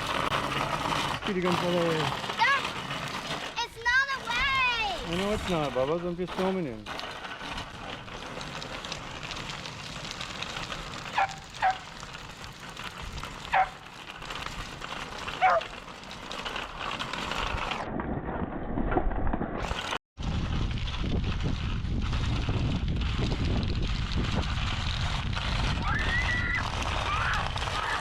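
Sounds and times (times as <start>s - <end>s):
outdoor background noise: 0.0s - 28.0s
dog barking: 11.2s - 11.8s, 15.4s - 15.7s.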